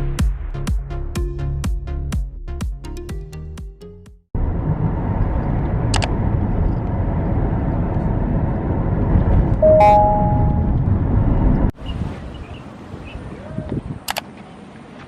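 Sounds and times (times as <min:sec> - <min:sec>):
low rumbling noise: 0:04.4 - 0:11.7
high chirp: 0:09.6 - 0:10.7
two-note tone: 0:09.6 - 0:10.8.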